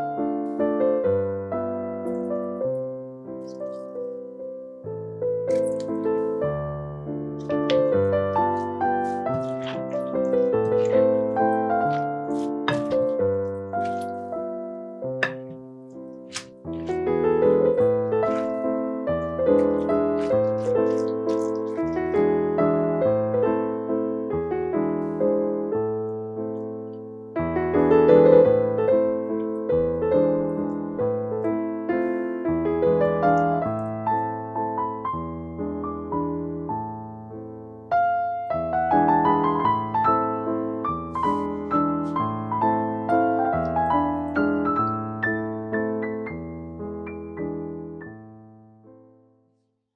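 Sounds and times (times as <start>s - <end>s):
piano chords: 0.0s - 49.1s.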